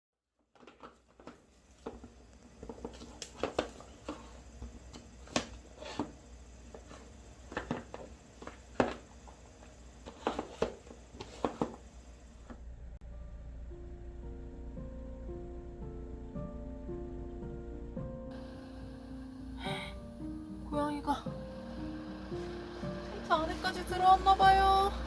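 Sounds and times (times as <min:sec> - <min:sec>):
low steady hum: 0:01.2 - 0:25.0.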